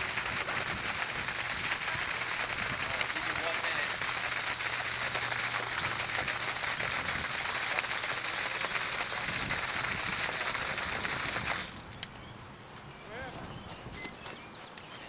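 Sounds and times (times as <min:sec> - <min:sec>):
water rushing from pump hose: 0:00.0 - 0:12.0.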